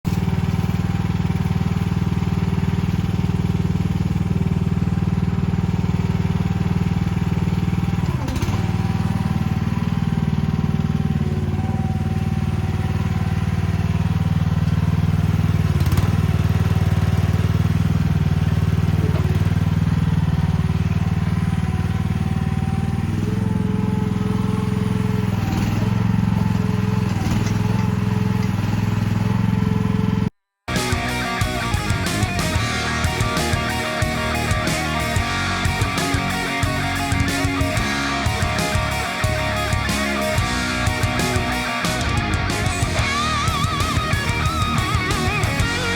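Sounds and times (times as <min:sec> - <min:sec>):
excavator engine running: 0:00.0 - 0:45.9
hydraulic whine stepping in pitch: 0:30.7 - 0:45.9.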